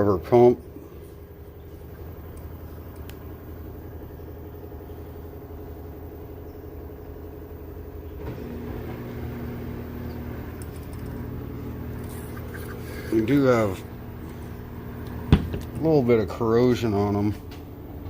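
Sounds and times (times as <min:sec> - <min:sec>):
engine humming: 0:00.6 - 0:18.0.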